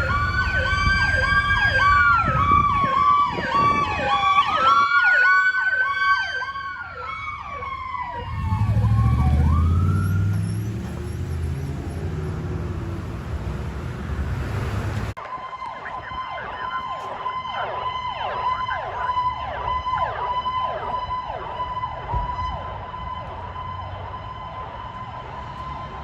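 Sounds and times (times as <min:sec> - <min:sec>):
steady high siren tone: 0:00.0 - 0:12.0, 0:15.2 - 0:26.0
fast falling siren sweeps: 0:00.0 - 0:13.2, 0:14.6 - 0:26.0
emergency vehicle siren: 0:00.0 - 0:26.0
road noise: 0:00.0 - 0:26.0
vehicle engine: 0:08.0 - 0:15.2.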